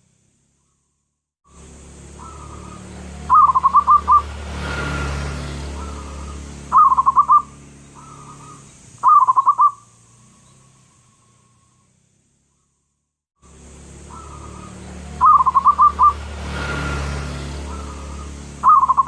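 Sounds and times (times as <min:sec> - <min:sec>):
dove cooing: 0:02.2 - 0:04.3, 0:05.7 - 0:09.8, 0:14.0 - 0:16.2, 0:17.6 - 0:19.0.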